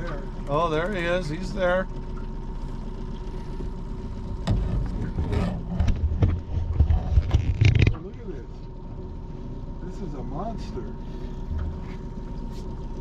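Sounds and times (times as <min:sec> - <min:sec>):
boat motor humming: 0:00.0 - 0:13.0
knocks and thumps in boat: 0:04.2 - 0:08.7.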